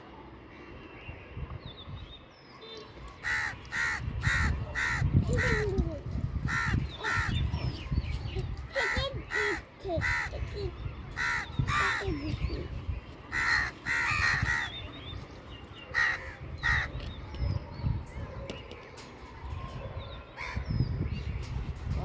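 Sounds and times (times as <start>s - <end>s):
crow cawing: 3.2s - 5.6s, 6.5s - 7.3s, 8.8s - 10.4s, 11.2s - 12.1s, 13.3s - 14.7s, 16.0s - 16.9s.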